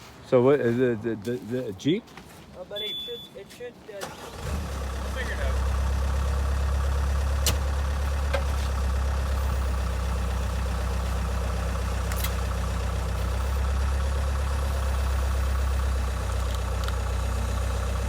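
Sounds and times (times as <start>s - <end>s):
engine idling: 4.0s - 18.0s.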